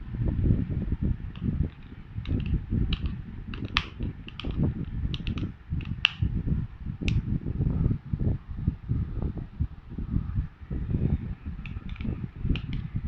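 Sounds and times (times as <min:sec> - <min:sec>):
low handling rumble: 0:00.0 - 0:13.0
plastic spray bottle clicks: 0:01.4 - 0:04.6.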